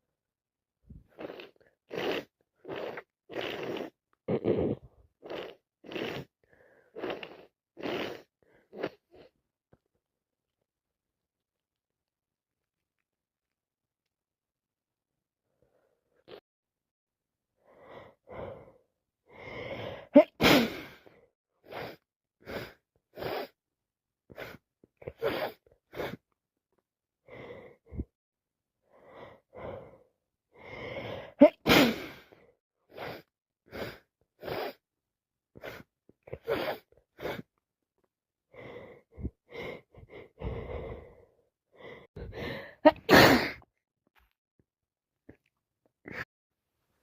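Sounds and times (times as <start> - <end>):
gasping in-breaths: 17.6 - 20.1, 38.5 - 43.0
person sneezing loudly: 20.2 - 21.0, 31.4 - 32.2, 42.8 - 43.6.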